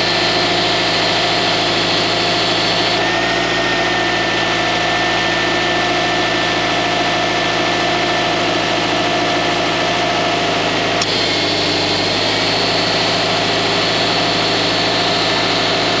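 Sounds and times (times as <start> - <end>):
belt whining squeal: 0.0 - 3.3, 11.0 - 16.0
car engine idling: 0.0 - 16.0
brief click: 11.0 - 11.4.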